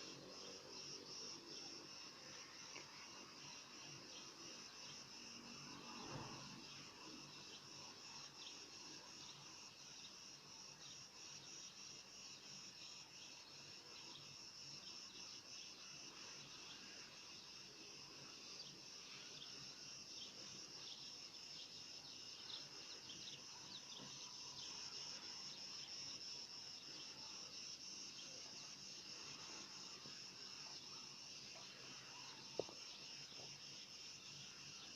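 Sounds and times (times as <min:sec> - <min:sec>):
insects chirring: 0:00.0 - 0:34.9.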